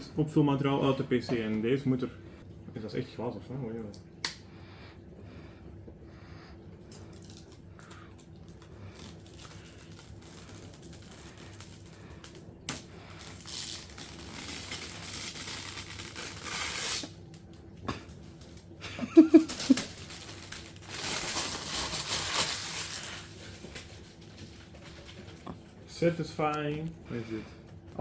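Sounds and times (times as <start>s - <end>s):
packing material crinkling: 6.9s - 25.6s.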